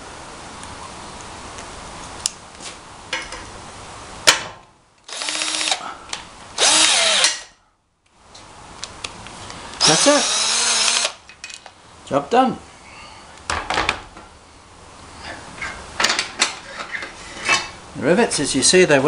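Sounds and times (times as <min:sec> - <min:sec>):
cordless drill motor whine: 0:05.1 - 0:05.8, 0:06.6 - 0:07.5, 0:09.8 - 0:11.2.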